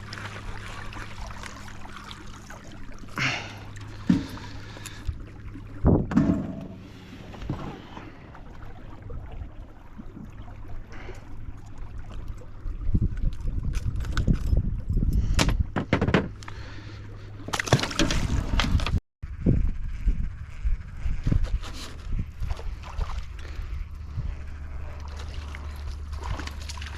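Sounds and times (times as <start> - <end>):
water sounds: 0.0 - 19.0, 21.9 - 26.9
steady low hum: 0.0 - 26.9
knocks and handling noise: 15.4 - 16.4.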